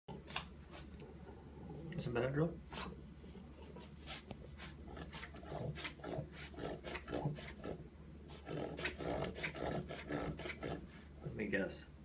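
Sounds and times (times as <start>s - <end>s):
dog reverse sneezing: 2.7s - 3.0s.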